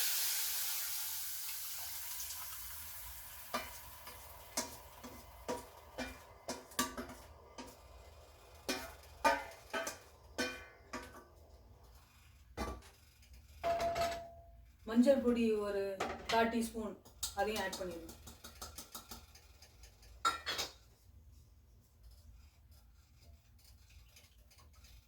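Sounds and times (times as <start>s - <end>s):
liquid sizzling in hot oil: 0.0s - 13.6s
spoon knocking against pot: 8.7s - 11.2s, 13.6s - 14.4s.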